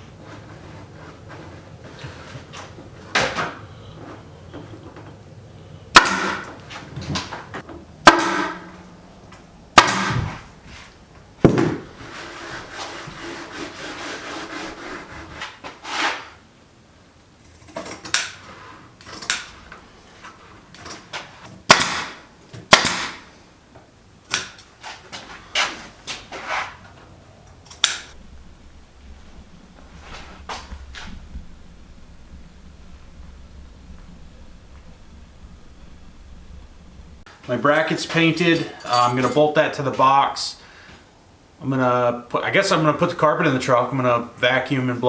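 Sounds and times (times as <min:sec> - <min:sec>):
steady hiss: 0:27.8 - 0:45.0
metal tools clanking: 0:37.8 - 0:40.1.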